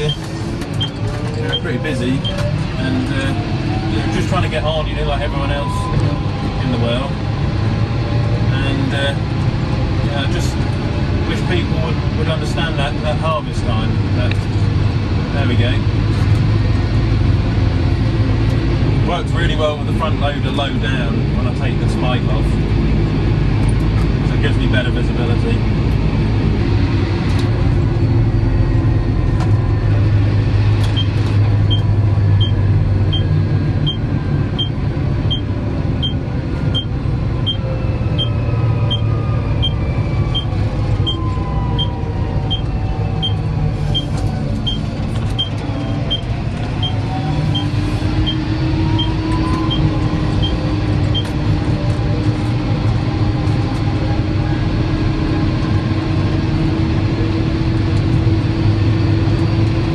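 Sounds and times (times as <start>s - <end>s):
tractor engine running: 25.4s - 54.4s
whine sliding in pitch: 33.2s - 52.8s.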